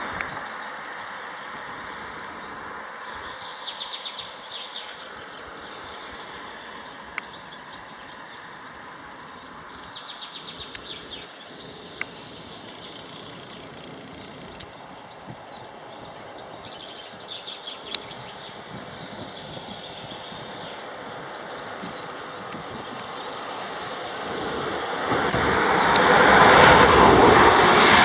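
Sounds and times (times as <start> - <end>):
sharp clicks: 13.6 - 14.8.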